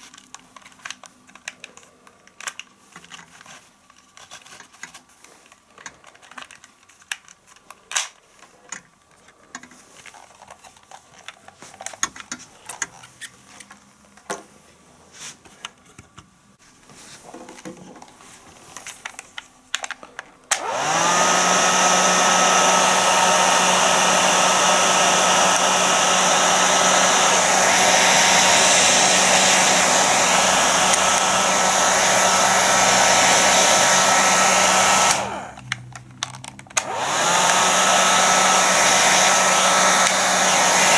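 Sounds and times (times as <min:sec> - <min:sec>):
hair dryer fan whining and rushing: 0:20.5 - 0:40.9.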